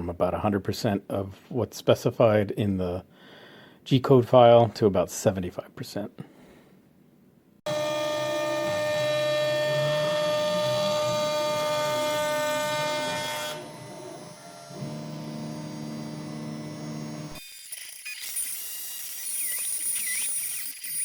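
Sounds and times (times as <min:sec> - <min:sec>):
rumble of wood cutting: 0:07.7 - 0:17.4
router spindle whine: 0:07.7 - 0:21.0.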